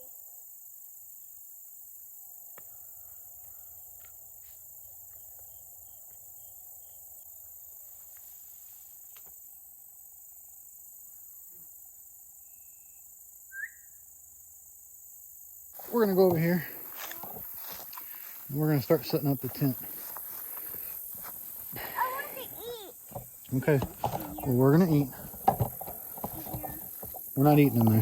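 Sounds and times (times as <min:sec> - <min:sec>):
high-pitched insect chorus: 0:00.0 - 0:28.0
small chirps: 0:13.5 - 0:14.0.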